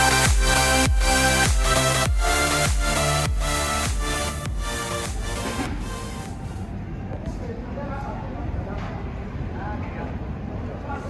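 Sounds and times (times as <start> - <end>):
electronic dance music: 0.0 - 6.7.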